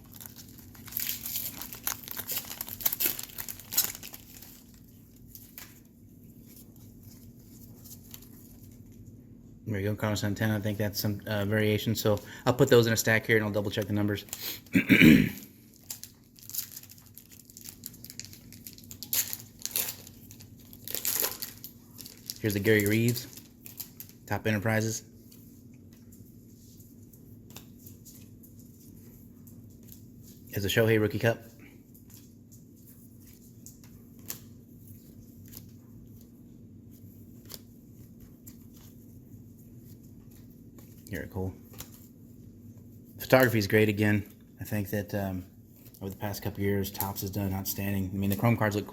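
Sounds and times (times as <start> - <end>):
foil wrappers rustling and crinkling: 0.0 - 9.0, 15.5 - 42.2, 45.6 - 48.9.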